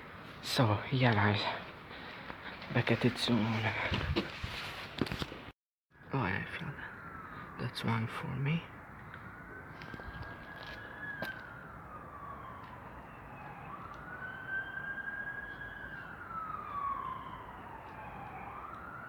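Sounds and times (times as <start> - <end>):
ambulance siren wailing: 6.4 - 19.0.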